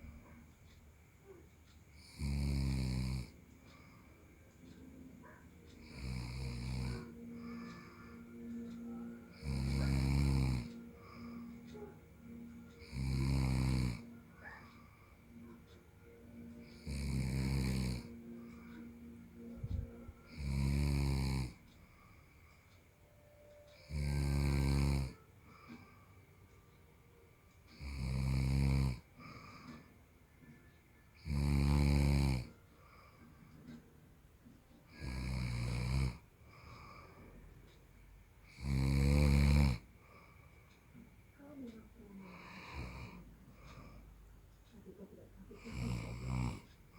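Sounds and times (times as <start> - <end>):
quiet breathing: 0.0 - 46.9
man snoring: 2.0 - 3.8, 5.2 - 14.6, 16.6 - 18.9, 20.3 - 21.6, 23.8 - 25.2, 27.7 - 29.5, 31.2 - 32.5, 34.9 - 37.0, 38.5 - 39.8, 42.2 - 43.9, 45.6 - 46.7.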